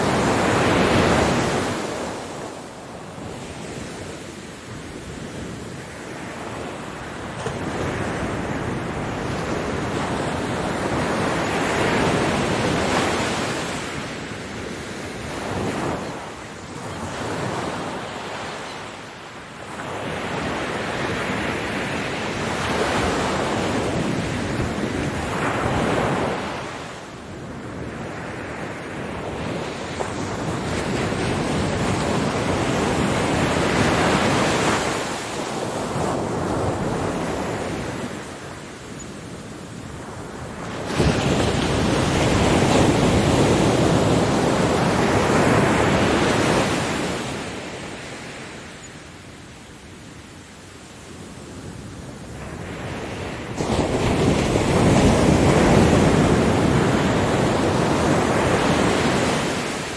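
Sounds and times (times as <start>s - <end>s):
ocean waves breaking: 0.0s - 59.9s.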